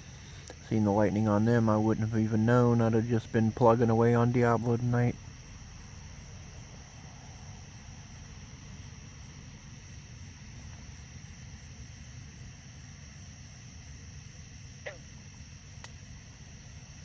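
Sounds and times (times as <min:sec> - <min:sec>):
crickets chirping chorus: 0:00.0 - 0:17.0
low background rumble: 0:00.0 - 0:17.0.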